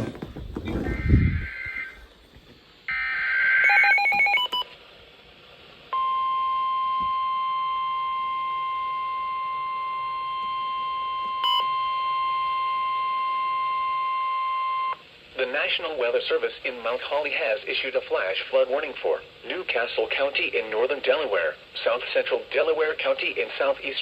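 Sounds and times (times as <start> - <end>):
stepped beeps: 3.7 - 4.7
steady warning alarm tone: 6.0 - 15.0.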